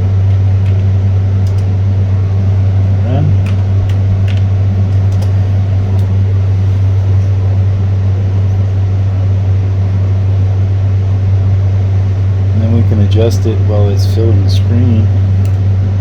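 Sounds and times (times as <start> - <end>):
loud low fan hum: 0.0 - 16.0.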